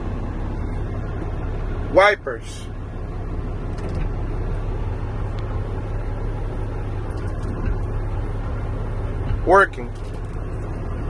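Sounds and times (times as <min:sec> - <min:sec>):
diesel truck engine idling: 0:00.0 - 0:11.0
windshield wipers ticking: 0:03.6 - 0:11.0.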